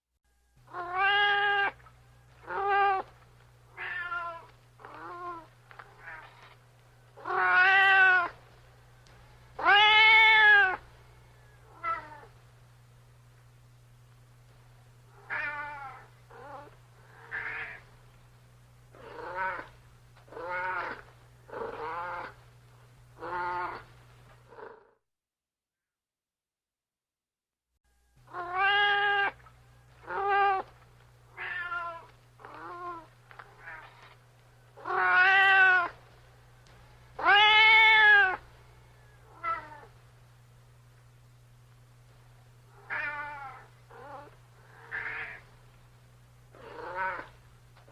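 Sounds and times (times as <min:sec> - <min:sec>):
steady low hum: 0:00.2 - 0:24.9, 0:27.9 - 0:47.9
cat meowing: 0:00.7 - 0:01.8, 0:02.4 - 0:03.1, 0:03.7 - 0:06.5, 0:07.2 - 0:08.4, 0:09.6 - 0:10.8, 0:15.2 - 0:17.8, 0:19.0 - 0:19.7, 0:20.3 - 0:21.0, 0:28.3 - 0:29.4, 0:31.3 - 0:34.1, 0:34.8 - 0:36.0, 0:37.2 - 0:38.4, 0:39.3 - 0:39.9, 0:42.8 - 0:45.4, 0:46.6 - 0:47.3.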